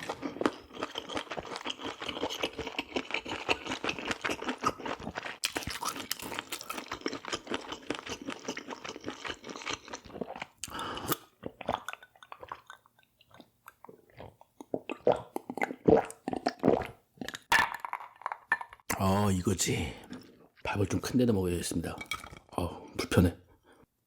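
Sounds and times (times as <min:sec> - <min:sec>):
person chewing crunchy food: 0:00.0 - 0:18.2, 0:20.0 - 0:20.6.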